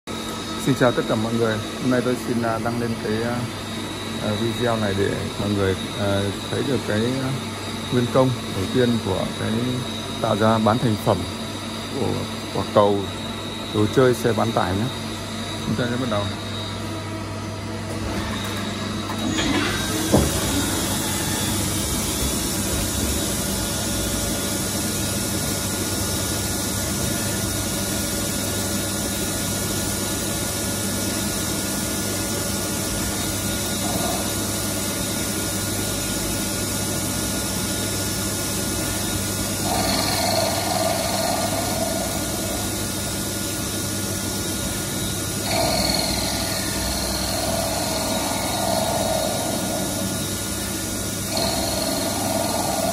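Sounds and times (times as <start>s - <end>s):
lathe whirring and hissing: 0.1s - 52.9s
higher steady tone: 45.5s - 52.9s.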